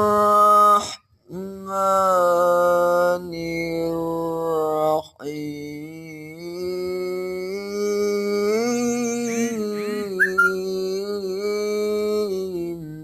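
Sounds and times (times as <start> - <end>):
short high chirps: 10.2 - 10.6.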